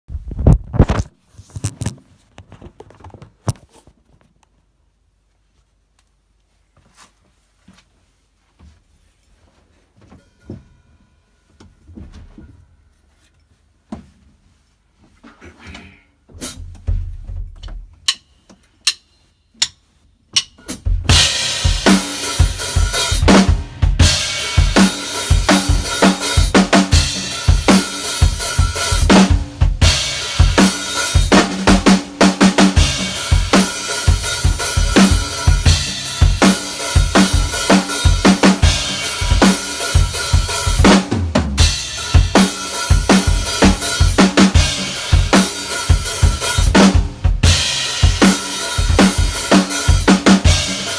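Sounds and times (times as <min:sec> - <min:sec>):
drum kit playing: 0:16.4 - 0:50.9.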